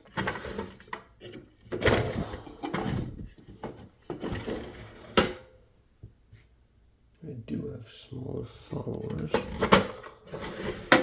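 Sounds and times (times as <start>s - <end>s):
lock and tools scraping and rattling: 9.3s - 11.0s.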